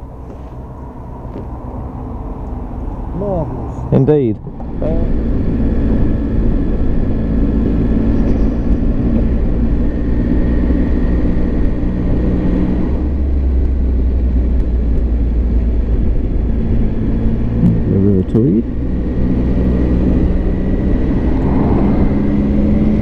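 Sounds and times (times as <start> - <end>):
motorcycle engine running: 3.2 - 23.0
wind rush over microphone: 19.5 - 23.0.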